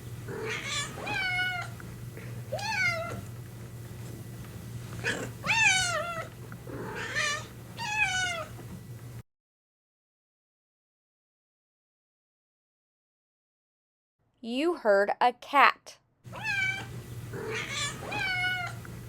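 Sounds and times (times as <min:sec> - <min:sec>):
steady low hum: 0:00.0 - 0:09.2, 0:16.3 - 0:19.0
cat meowing: 0:00.4 - 0:01.8, 0:02.5 - 0:03.3, 0:05.0 - 0:08.6, 0:16.3 - 0:18.8.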